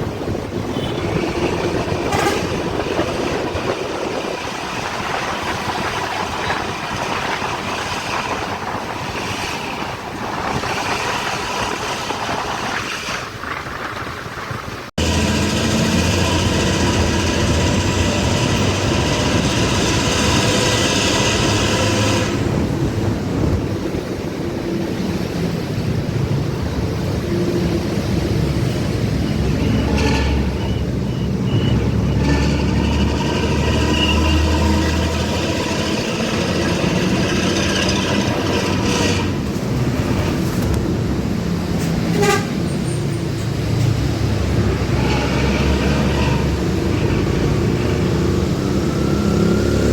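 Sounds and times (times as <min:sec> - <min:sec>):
bus engine droning: 0:00.0 - 0:13.4, 0:14.1 - 0:49.9
long horn blasts: 0:00.6 - 0:05.0, 0:15.0 - 0:22.8, 0:42.0 - 0:42.7.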